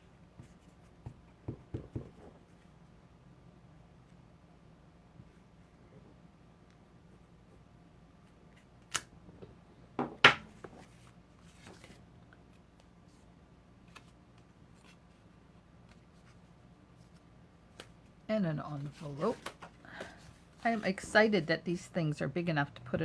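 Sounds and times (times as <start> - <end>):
paper rustle: 10.8 - 12.0, 18.7 - 21.0.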